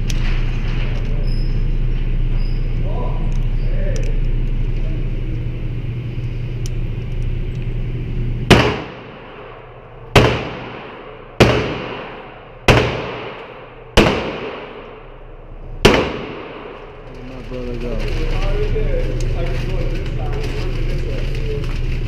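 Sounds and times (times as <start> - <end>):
handgun shots: 8.5 - 9.4, 10.2 - 15.0, 15.8 - 16.8.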